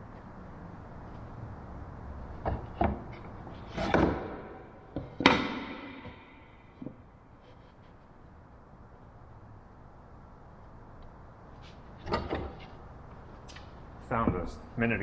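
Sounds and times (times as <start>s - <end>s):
low steady hum: 0.0s - 15.0s
objects knocking and thudding: 2.4s - 7.0s.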